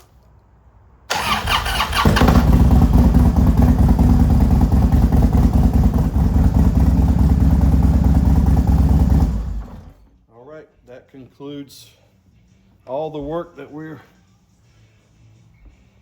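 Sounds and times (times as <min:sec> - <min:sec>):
motorcycle starter cranking: 0:01.1 - 0:03.6
motorcycle engine running: 0:01.8 - 0:10.0.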